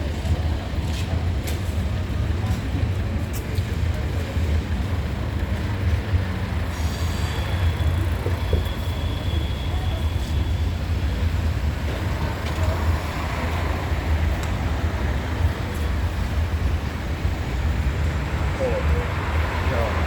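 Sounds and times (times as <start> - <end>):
high wheel squeal: 6.6 - 11.1.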